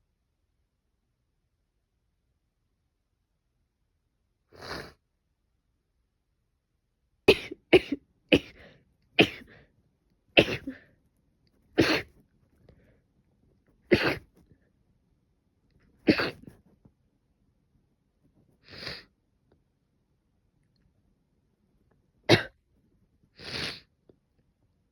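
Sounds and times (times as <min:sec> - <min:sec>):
woman coughing: 0:07.3 - 0:08.6, 0:09.2 - 0:09.6, 0:10.4 - 0:10.8, 0:11.8 - 0:12.1, 0:13.9 - 0:14.3, 0:16.1 - 0:16.5, 0:22.3 - 0:22.6.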